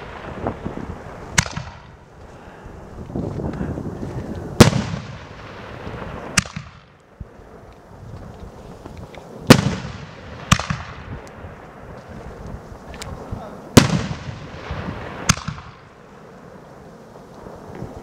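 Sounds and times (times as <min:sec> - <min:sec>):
fireworks bangs with echo: 0:00.0 - 0:02.1, 0:04.6 - 0:07.6, 0:09.4 - 0:12.1, 0:12.9 - 0:18.0.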